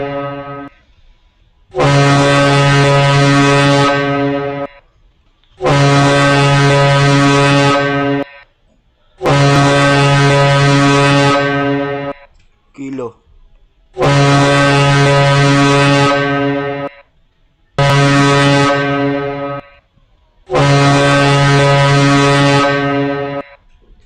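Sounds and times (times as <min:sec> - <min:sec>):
low horn-like morse tones: 0:00.0 - 0:04.8, 0:05.6 - 0:08.3, 0:09.2 - 0:12.2, 0:13.9 - 0:17.0, 0:17.7 - 0:19.8, 0:20.5 - 0:23.6.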